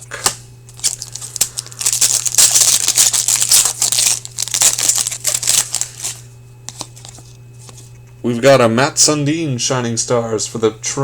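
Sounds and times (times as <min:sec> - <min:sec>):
low electrical hum: 0:00.0 - 0:11.0
plastic wrapper tearing and crinkling: 0:00.7 - 0:07.2.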